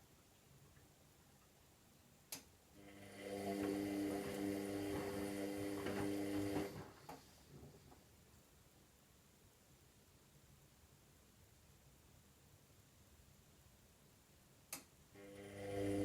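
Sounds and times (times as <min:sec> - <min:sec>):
washing machine motor humming: 0:02.8 - 0:07.0, 0:15.2 - 0:16.0.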